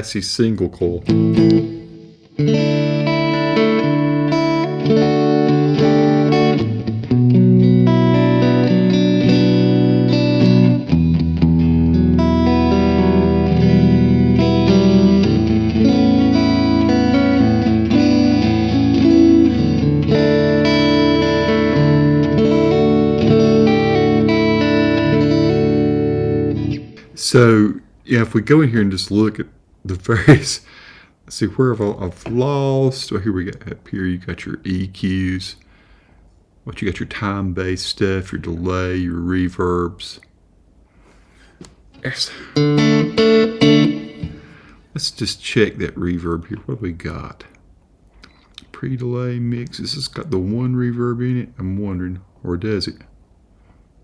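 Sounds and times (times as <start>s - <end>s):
clean electric guitar: 0.9s - 27.2s, 41.6s - 44.8s.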